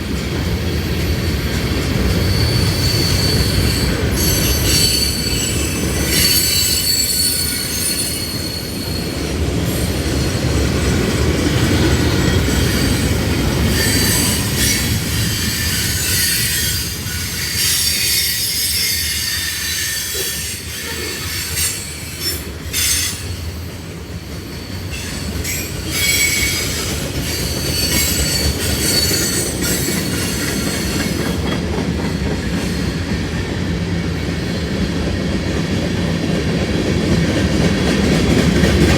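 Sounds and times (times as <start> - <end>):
rail wheels rumbling: 0.0 - 38.9
metallic wheel squeal: 2.2 - 9.2, 13.7 - 23.3, 25.0 - 31.2.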